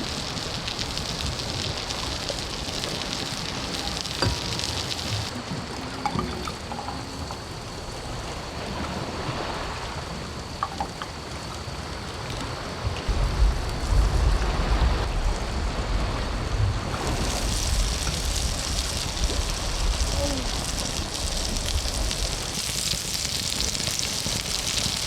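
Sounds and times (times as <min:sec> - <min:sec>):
high hiss: 0:00.0 - 0:10.8, 0:12.6 - 0:25.0
wind and sea surf: 0:00.0 - 0:25.0
wind buffeting microphone: 0:12.6 - 0:25.0.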